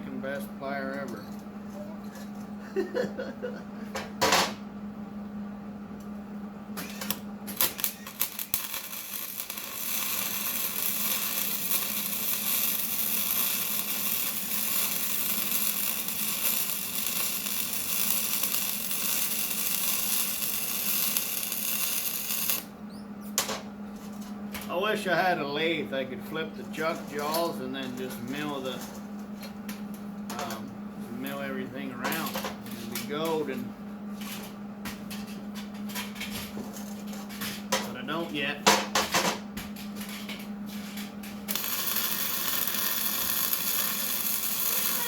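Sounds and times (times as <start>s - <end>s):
power tool running: 7.0s - 23.0s, 41.5s - 45.0s.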